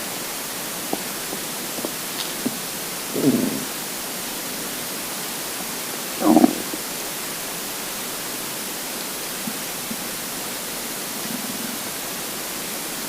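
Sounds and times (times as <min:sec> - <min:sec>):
steady hiss: 0:00.0 - 0:13.0
stomach gurgles: 0:00.7 - 0:03.8, 0:06.1 - 0:07.0, 0:11.0 - 0:12.0
stomach growling: 0:00.8 - 0:03.9, 0:06.1 - 0:06.9.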